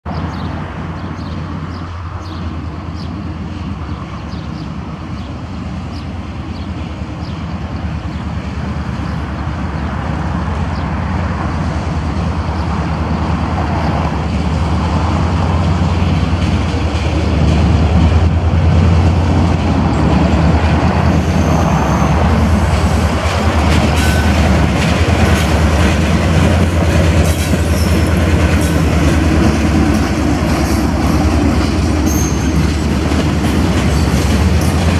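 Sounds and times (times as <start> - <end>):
diesel locomotive engine drone: 0.1 - 34.9
wheels squealing: 19.9 - 34.9.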